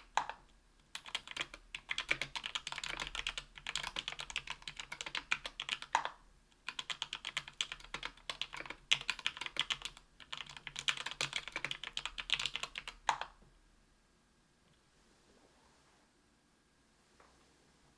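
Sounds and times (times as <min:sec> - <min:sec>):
typing on a keyboard: 0:00.0 - 0:13.4.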